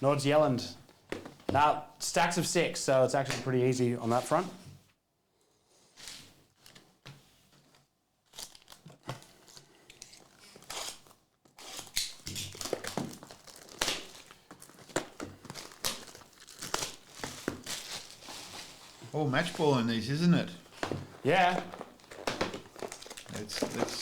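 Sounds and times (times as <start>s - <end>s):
wrappers tearing and crinkling: 8.3s - 24.0s.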